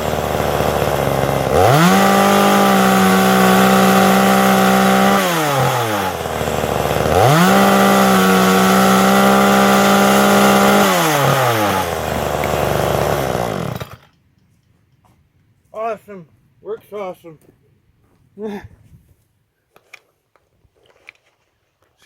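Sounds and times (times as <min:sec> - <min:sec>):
chainsaw revving and idling: 0:00.0 - 0:14.2.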